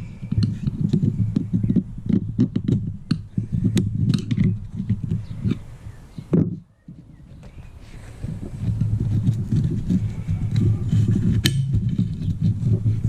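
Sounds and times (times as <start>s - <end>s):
rough scraping and rustling: 0.0s - 13.0s
recoil spring clicks and knocks: 11.4s - 12.2s.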